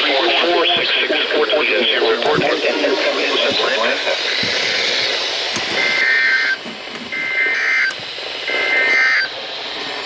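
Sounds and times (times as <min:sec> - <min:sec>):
radio static: 0:00.0 - 0:10.0
two-tone warbling data tones: 0:07.2 - 0:09.3.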